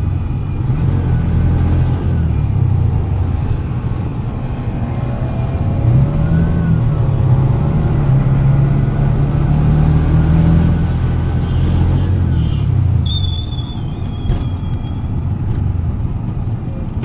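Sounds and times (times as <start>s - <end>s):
vehicle engine humming: 0.0s - 17.0s.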